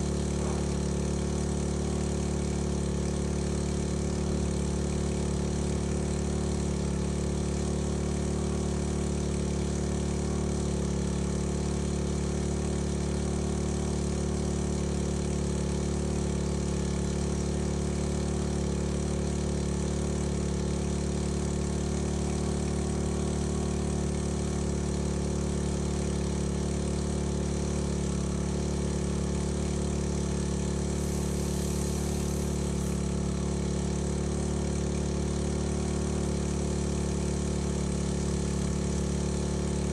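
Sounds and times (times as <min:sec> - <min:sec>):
small pump engine running: 0:00.0 - 0:39.9.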